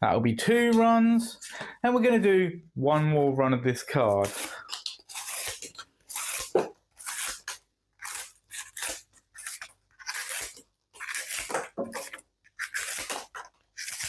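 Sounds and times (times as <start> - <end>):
knife cutting cardboard: 4.1 - 14.0.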